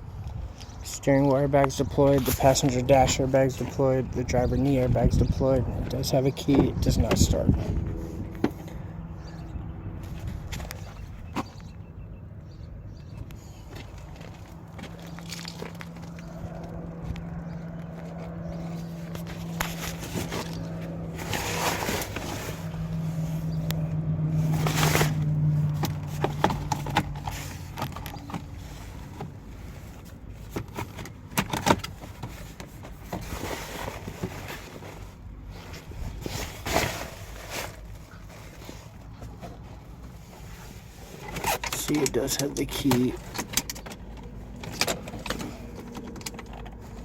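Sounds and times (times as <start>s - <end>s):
engine hum: 0.0s - 47.0s
scraping rustles: 13.0s - 47.0s.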